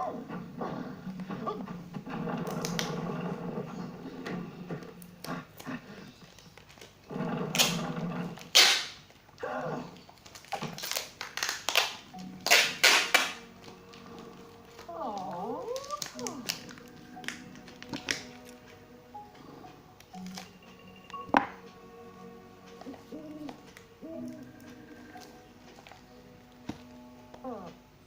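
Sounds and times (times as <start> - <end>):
sharp rips or scrapes: 7.5 - 9.0, 10.2 - 13.4
wrapping material crinkling: 10.0 - 18.6.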